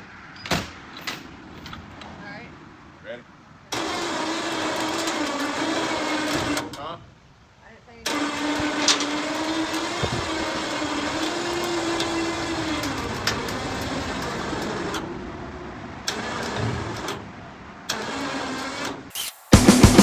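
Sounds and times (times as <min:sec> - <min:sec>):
short clicks: 0:19.1 - 0:19.6
motor humming: 0:19.1 - 0:20.0.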